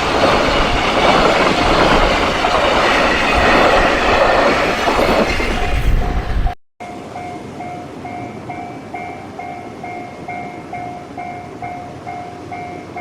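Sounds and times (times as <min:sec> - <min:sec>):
passing train: 0:00.0 - 0:13.0.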